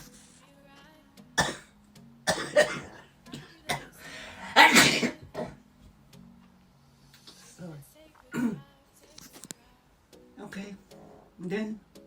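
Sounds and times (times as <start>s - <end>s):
person coughing: 1.4s - 1.7s, 2.3s - 3.9s, 4.6s - 5.6s, 8.3s - 8.6s.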